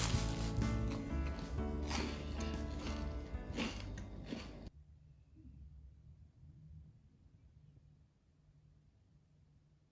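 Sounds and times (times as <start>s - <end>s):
background music: 0.0s - 4.7s.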